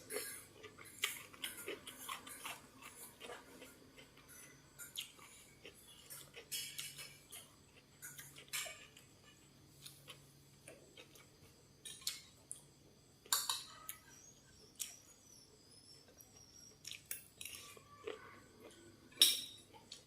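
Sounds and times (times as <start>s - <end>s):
utensils clinking against plate: 1.0s - 9.1s, 19.1s - 19.7s.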